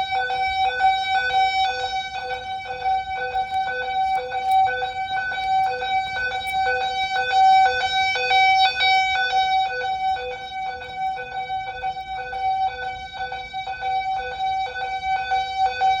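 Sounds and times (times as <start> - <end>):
pulsing electronic fire alarm tone: 0.0 - 16.0.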